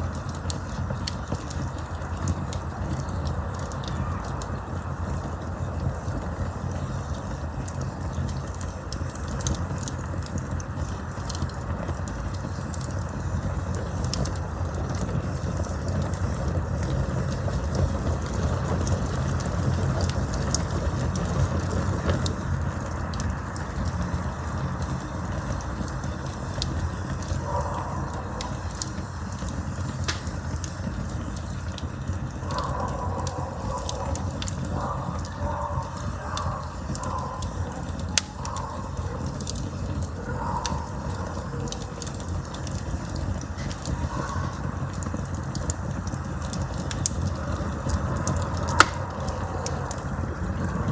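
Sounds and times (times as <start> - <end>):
burning wood crackling and popping: 0.0 - 50.9
campfire flames rushing: 0.0 - 50.9.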